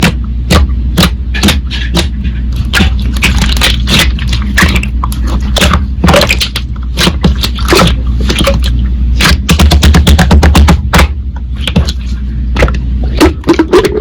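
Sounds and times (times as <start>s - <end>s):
steady low hum: 0.0s - 14.0s
slime popping and crackling: 2.7s - 10.4s.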